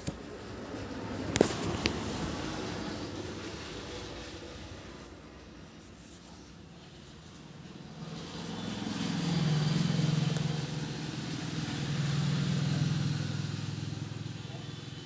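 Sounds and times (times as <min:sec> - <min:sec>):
vehicle engine passing: 0:07.2 - 0:15.0.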